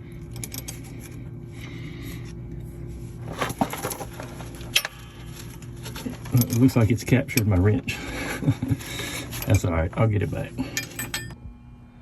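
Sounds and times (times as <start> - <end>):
wrench clinking on metal parts: 10.6 - 11.4.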